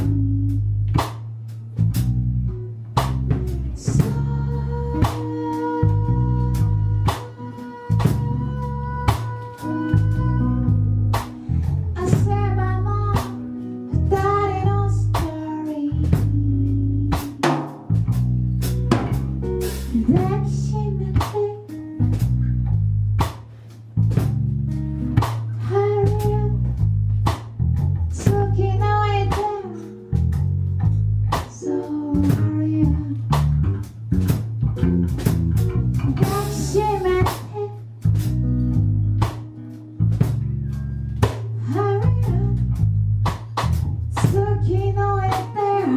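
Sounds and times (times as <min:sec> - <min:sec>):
band playing guitar drums and bass: 0:00.0 - 0:45.9
person singing: 0:03.8 - 0:11.2, 0:19.9 - 0:21.8, 0:31.5 - 0:33.2, 0:36.0 - 0:37.9, 0:44.2 - 0:45.9.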